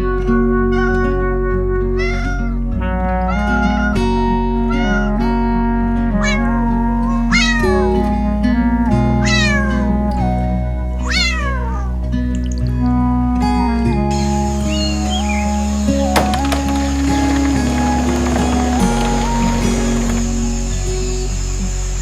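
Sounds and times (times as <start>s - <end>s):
background music: 0.0s - 22.0s
cat meowing: 0.7s - 1.2s, 2.0s - 2.7s, 3.3s - 5.4s, 6.2s - 8.0s, 9.2s - 9.9s, 11.0s - 12.0s.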